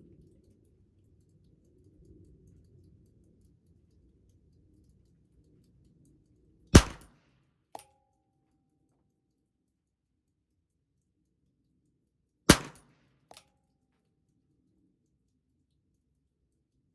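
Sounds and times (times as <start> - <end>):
revolver gunshot: 6.8 - 7.1, 12.5 - 12.9.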